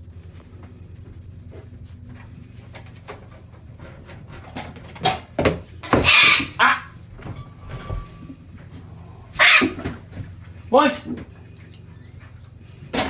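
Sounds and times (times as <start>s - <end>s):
parrot squawking: 5.9s - 7.0s, 9.3s - 9.9s.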